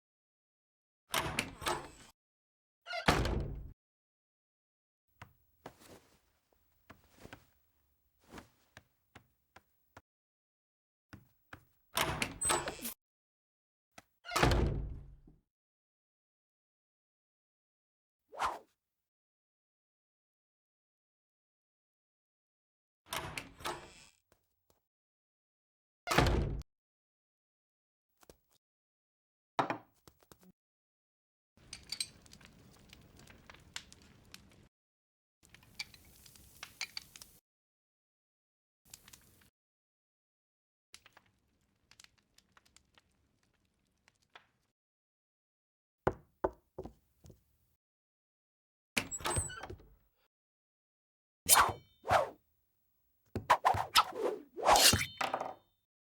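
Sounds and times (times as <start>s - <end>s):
sharp metallic clank: 53.5s - 55.4s.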